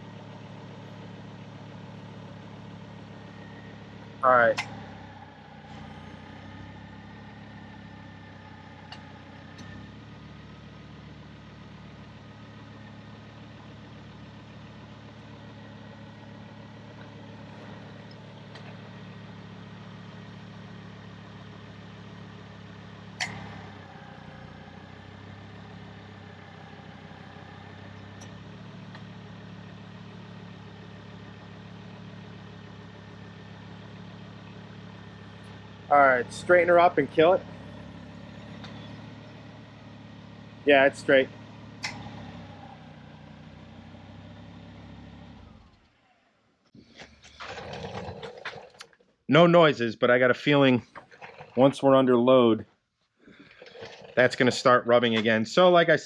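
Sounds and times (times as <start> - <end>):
car engine idling: 0.0 - 52.6, 53.2 - 56.0
sharp click: 23.2 - 23.6, 41.8 - 42.1.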